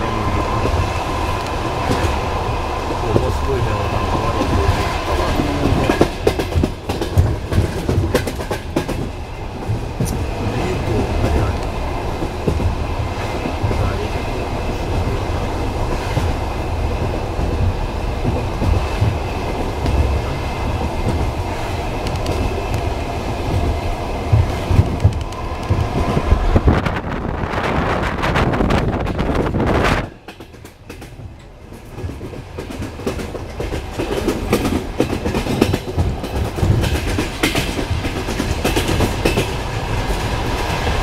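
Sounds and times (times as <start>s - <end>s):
rumble of moving train cars: 0.0s - 41.0s
train wheels clattering over joints: 0.0s - 41.0s.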